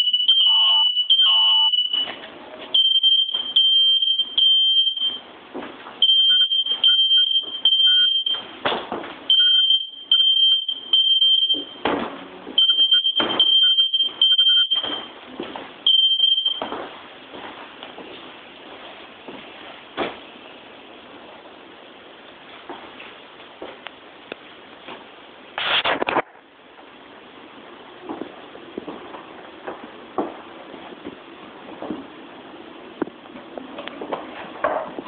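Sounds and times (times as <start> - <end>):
smoke alarm beeping: 0.0 - 5.2, 6.0 - 8.5, 9.3 - 11.9, 12.6 - 15.2, 15.8 - 16.8.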